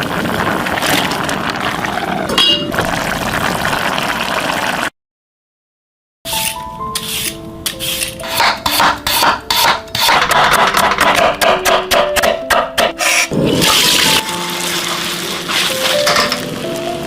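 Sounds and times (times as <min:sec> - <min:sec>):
rasping food preparation strokes: 0:06.3 - 0:11.4, 0:14.7 - 0:16.4
background music with plucked melody: 0:06.3 - 0:17.0.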